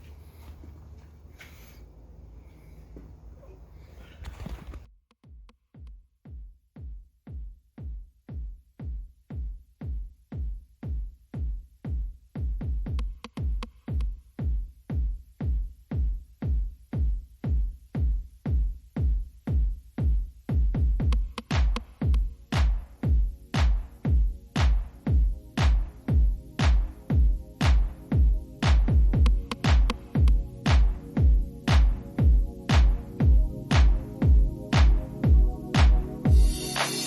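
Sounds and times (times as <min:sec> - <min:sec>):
electronic music with kick drum: 0:04.9 - 0:37.0
bright percussion: 0:28.6 - 0:37.0.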